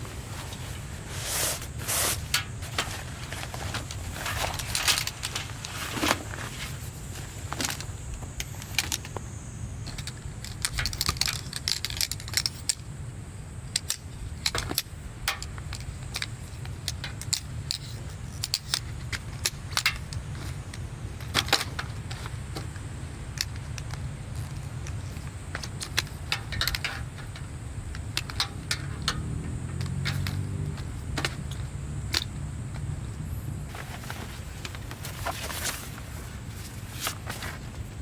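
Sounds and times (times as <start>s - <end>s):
steady low rumble: 0.0s - 38.0s
small hard items clinking: 13.8s - 32.9s.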